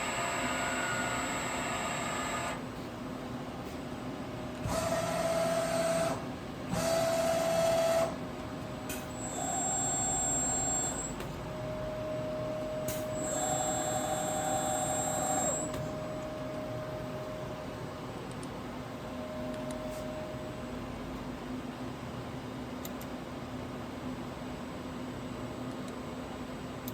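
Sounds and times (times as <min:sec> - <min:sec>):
milling machine motor whine: 0:00.0 - 0:02.8, 0:04.4 - 0:18.1
steady hum: 0:00.0 - 0:22.7.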